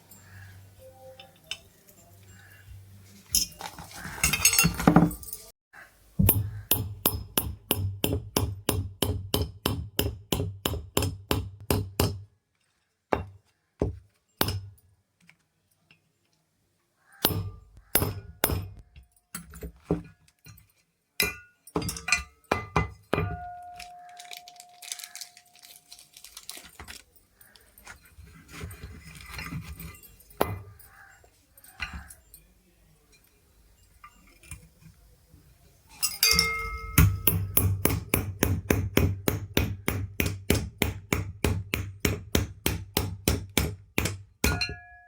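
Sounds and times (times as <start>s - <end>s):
handling noise: 0.0s - 5.5s, 23.2s - 37.8s
metallic clinks: 0.0s - 5.5s, 20.4s - 37.9s
hammer tapping on metal: 6.2s - 12.2s, 17.2s - 18.8s, 36.0s - 44.9s
steady metallic ring: 35.9s - 38.1s.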